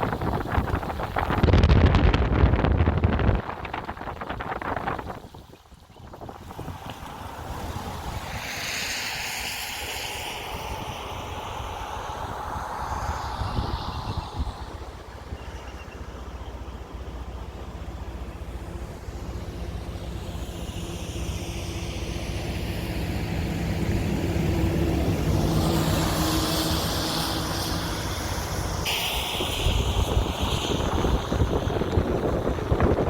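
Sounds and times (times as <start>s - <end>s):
engine humming: 0.0s - 33.0s
hiss sweeping in pitch: 19.2s - 31.8s.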